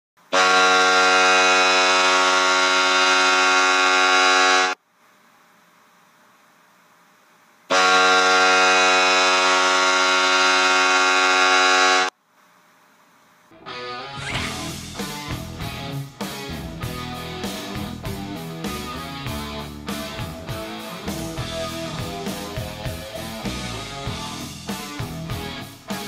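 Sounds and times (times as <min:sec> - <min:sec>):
goal horn blasts: 0:00.3 - 0:04.8, 0:07.7 - 0:12.1.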